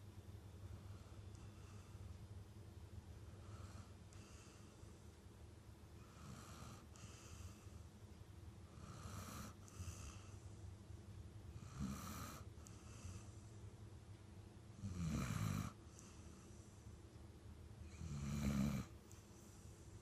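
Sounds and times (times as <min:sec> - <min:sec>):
dog snoring: 0:03.4 - 0:04.8, 0:06.0 - 0:07.7, 0:08.7 - 0:10.4, 0:11.5 - 0:13.4, 0:14.8 - 0:16.6, 0:17.8 - 0:19.2.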